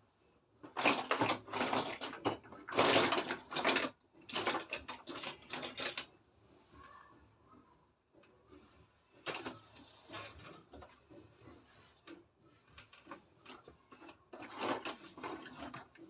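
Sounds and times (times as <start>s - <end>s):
plastic toy pieces clattering: 0.7s - 6.1s, 12.8s - 16.0s.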